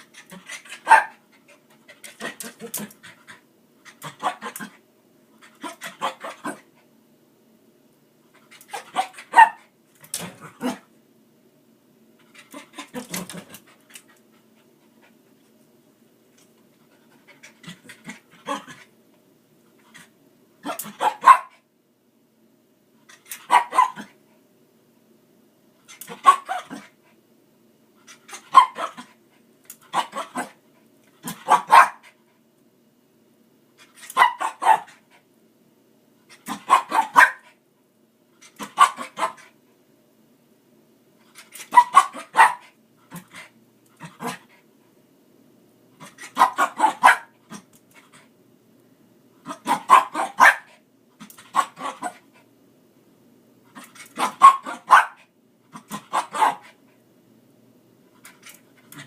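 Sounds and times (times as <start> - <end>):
dog barking sharply: 0.8 - 1.2, 8.7 - 9.6, 20.6 - 21.6, 23.4 - 24.1, 26.2 - 26.8, 31.3 - 32.0, 34.2 - 35.0, 36.5 - 37.4, 38.6 - 39.4, 41.7 - 42.7, 46.4 - 47.4, 49.5 - 50.8, 54.2 - 55.2, 56.0 - 56.7.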